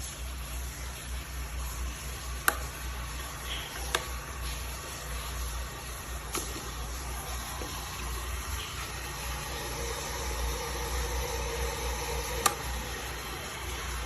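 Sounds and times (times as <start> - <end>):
kettle heating water: 0.0 - 14.0
kettle switch click: 2.4 - 2.7, 12.0 - 12.9.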